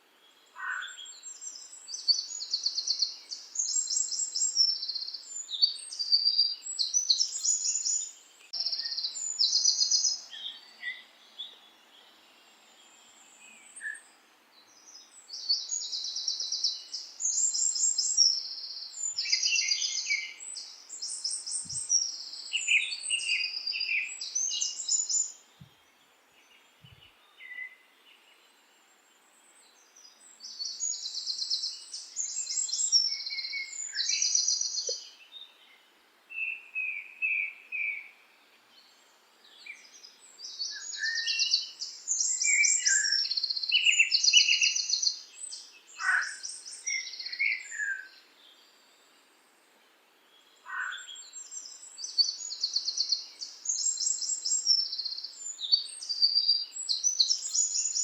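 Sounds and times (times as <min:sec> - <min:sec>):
birds chirping trills: 0:50.3 - 0:58.0.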